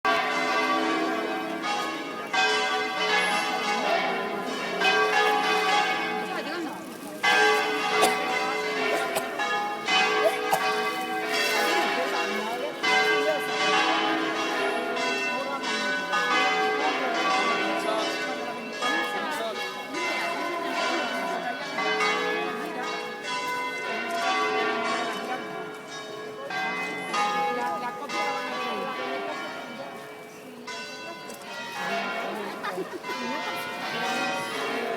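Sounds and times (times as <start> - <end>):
church bells ringing: 0.1 - 34.9.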